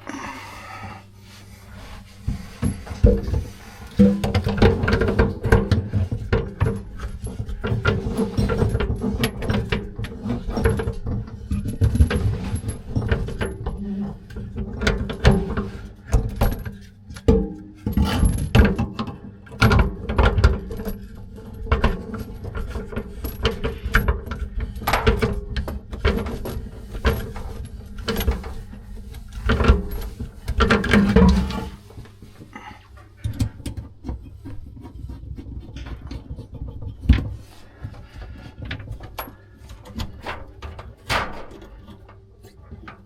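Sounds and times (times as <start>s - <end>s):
tools and pipes clanking: 0.0s - 43.0s
rubbing and scraping: 0.3s - 13.0s, 25.6s - 43.0s.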